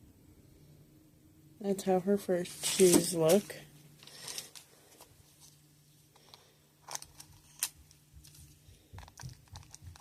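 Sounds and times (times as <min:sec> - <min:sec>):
plastic clicks: 0:09.0 - 0:10.0.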